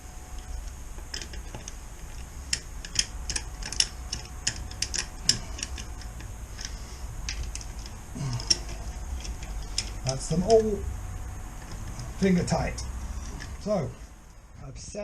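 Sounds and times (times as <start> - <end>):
metallic clicks and ticks of wheel bolts: 0.4 - 10.9.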